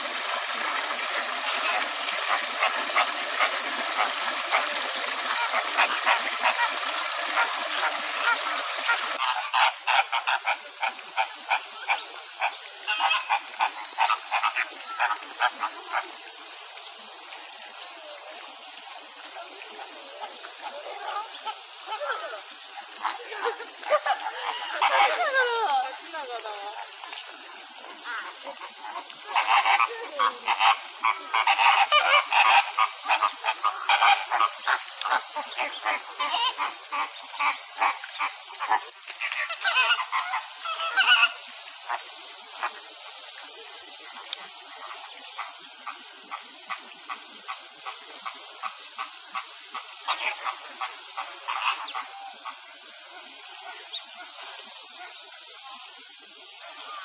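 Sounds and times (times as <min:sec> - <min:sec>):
rapid pulsed animal calls: 0:00.0 - 0:16.1
cicadas buzzing: 0:00.0 - 0:57.0.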